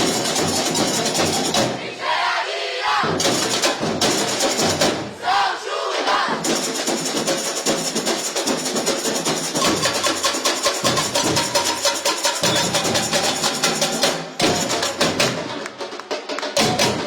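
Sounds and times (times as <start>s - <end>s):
samba percussion ensemble: 0.0s - 17.0s.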